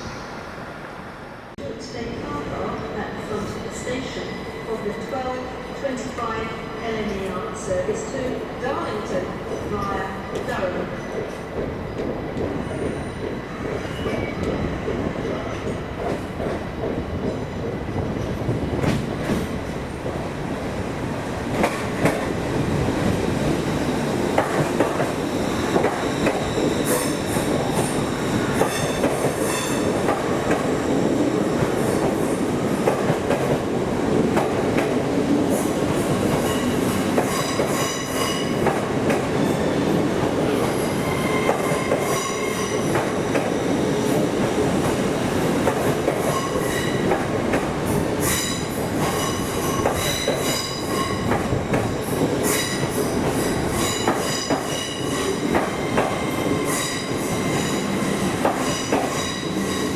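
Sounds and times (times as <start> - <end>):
train rumble: 0.0 - 59.9
train wheels squealing: 12.6 - 14.6, 23.6 - 29.9, 40.7 - 43.0, 52.4 - 59.9.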